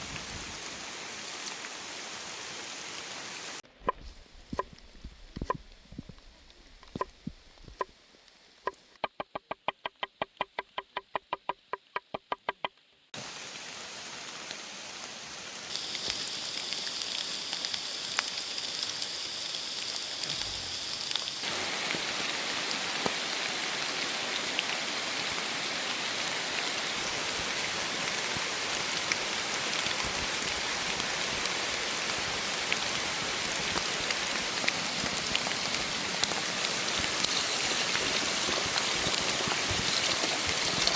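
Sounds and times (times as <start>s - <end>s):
steady rain falling: 0.0s - 3.6s, 13.2s - 40.9s
fast even tapping: 8.7s - 12.7s.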